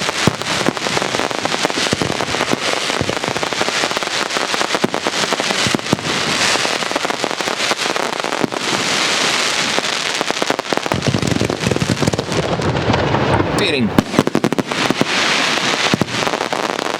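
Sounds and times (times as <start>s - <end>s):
deep firework bangs: 0.0s - 16.9s
fireworks crackling: 0.0s - 16.9s.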